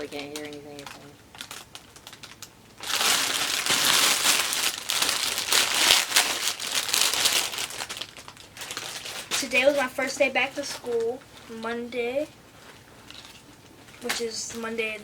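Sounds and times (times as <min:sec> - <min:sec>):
plastic wrapping crinkling: 0:00.0 - 0:15.0.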